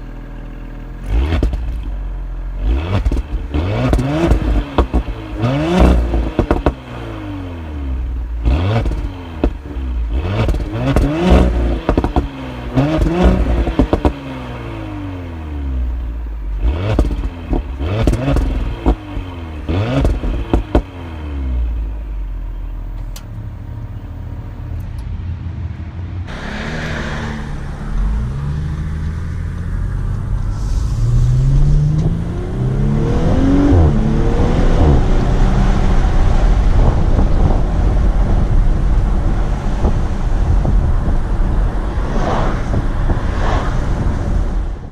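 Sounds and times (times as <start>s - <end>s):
car exhaust revving: 0.0s - 44.9s
exhaust pops and crackles: 1.0s - 2.0s, 2.6s - 6.9s, 8.5s - 14.2s, 16.5s - 21.0s, 36.1s - 43.3s.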